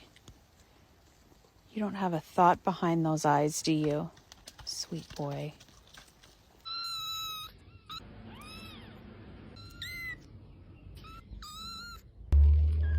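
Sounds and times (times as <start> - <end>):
cat meowing: 6.7 - 10.2.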